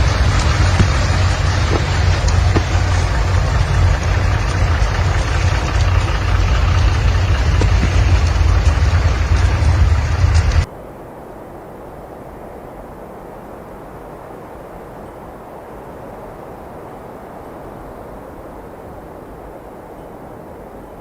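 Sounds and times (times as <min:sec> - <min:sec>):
heavy vehicle engine running: 0:00.0 - 0:10.7.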